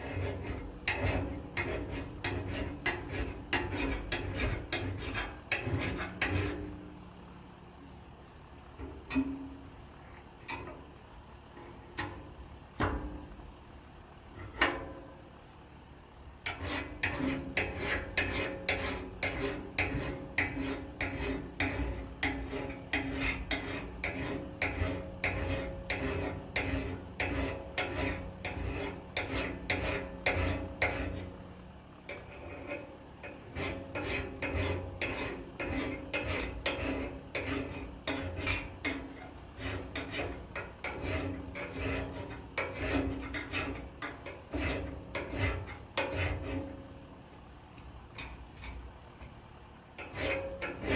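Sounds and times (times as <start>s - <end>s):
metal file rasping on steel: 0.0s - 6.8s, 16.4s - 31.4s, 32.1s - 46.9s, 50.0s - 50.9s.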